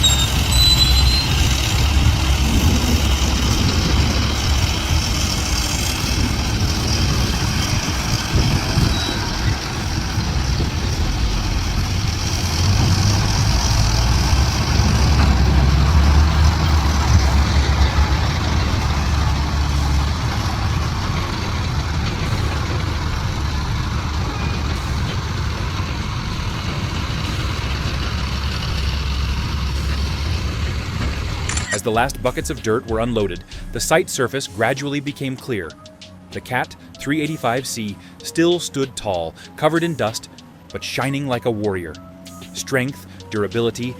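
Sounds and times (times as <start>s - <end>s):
heavy diesel machinery rumbling: 0.0s - 43.9s.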